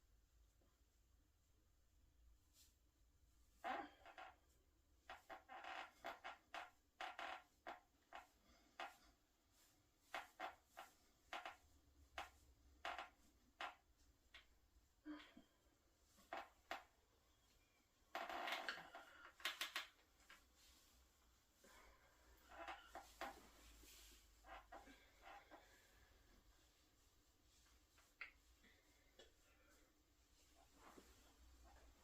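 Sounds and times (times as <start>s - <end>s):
clothing rustle: 2.3s - 32.0s
hands brushing and tapping body: 7.4s - 14.9s, 18.6s - 32.0s.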